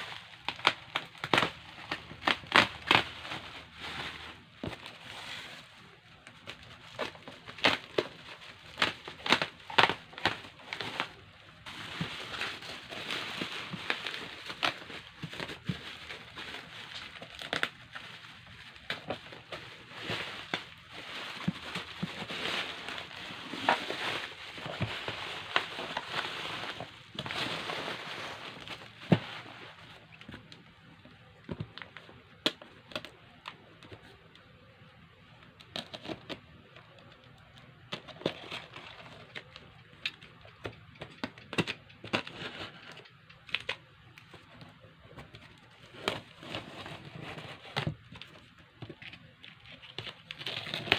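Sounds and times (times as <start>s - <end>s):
packaging crinkling and rustling: 0.0s - 34.5s, 35.4s - 50.9s.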